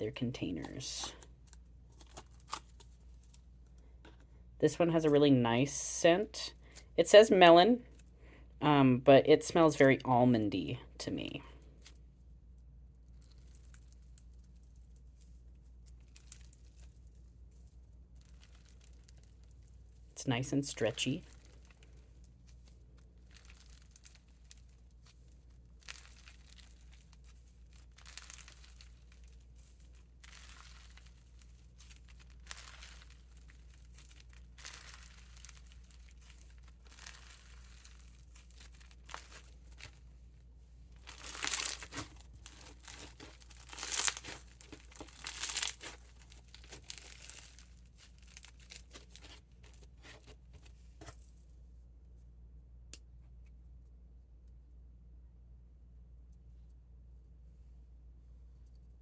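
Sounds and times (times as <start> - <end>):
slime beads crackling: 13.1 - 40.0, 41.0 - 50.4
slime beads crunching: 13.1 - 40.0, 41.0 - 50.4.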